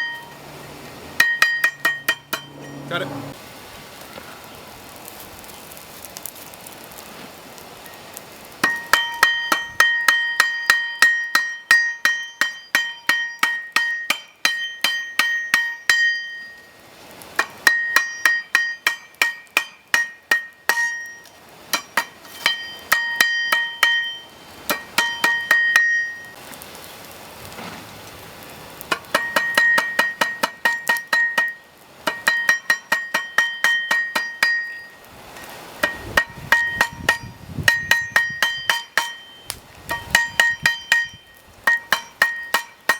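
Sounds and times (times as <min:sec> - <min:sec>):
hammer striking steel on anvil: 0:00.0 - 0:00.4, 0:01.2 - 0:03.4, 0:08.6 - 0:16.7, 0:17.4 - 0:26.4, 0:28.9 - 0:42.9.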